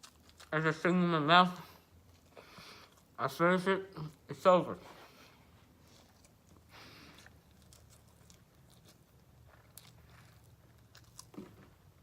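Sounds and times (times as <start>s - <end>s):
faint chewing mouth sounds: 0.0s - 0.6s, 1.6s - 3.2s, 5.0s - 12.0s.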